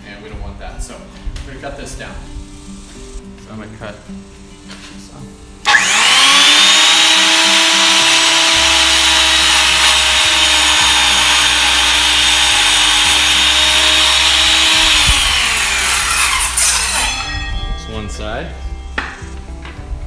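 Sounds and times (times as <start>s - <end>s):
electric saw cutting wood: 5.6s - 18.2s.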